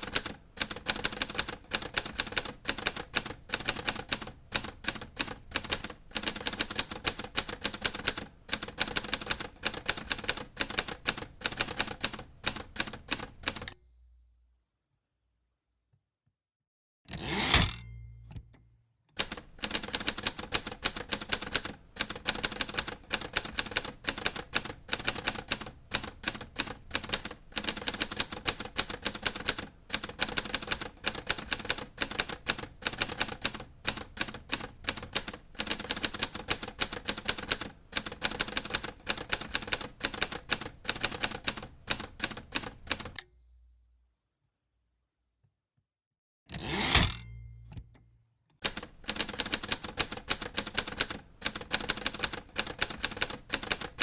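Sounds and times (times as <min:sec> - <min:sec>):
typewriter keys clacking: 0:00.0 - 0:13.7, 0:19.2 - 0:43.2, 0:48.6 - 0:54.0
typewriter bell ding: 0:13.6 - 0:15.5, 0:17.6 - 0:18.3, 0:43.2 - 0:45.0, 0:47.0 - 0:47.7
typewriter carriage clatter: 0:19.2 - 0:43.2, 0:48.6 - 0:54.0.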